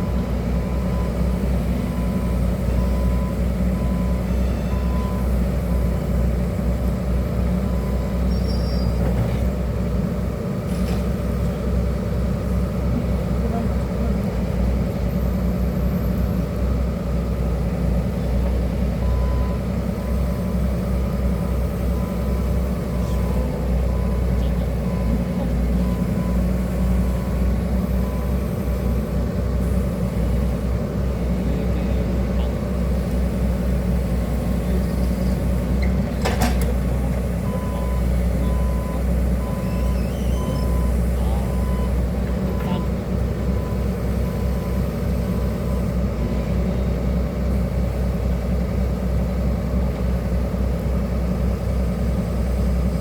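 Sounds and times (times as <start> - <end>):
travel alarm beeping: 0.0 - 6.4, 7.5 - 9.0, 18.9 - 30.7, 36.5 - 46.6
diesel engine running: 0.0 - 53.0.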